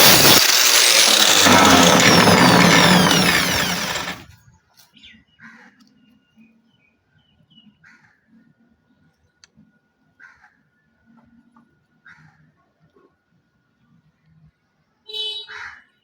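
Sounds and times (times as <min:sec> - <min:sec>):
power tool grinding metal: 0:00.0 - 0:04.3.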